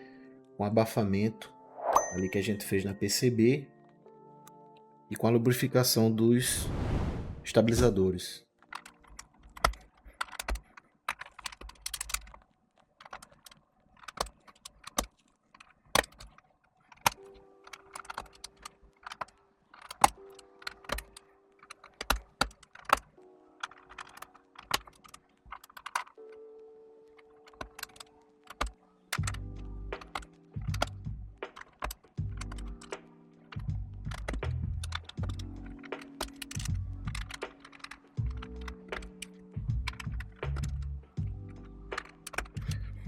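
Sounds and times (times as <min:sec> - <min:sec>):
background music: 0:00.0 - 0:43.0
mechanical keyboard clacks: 0:08.7 - 0:12.4, 0:13.0 - 0:26.5, 0:27.1 - 0:43.0.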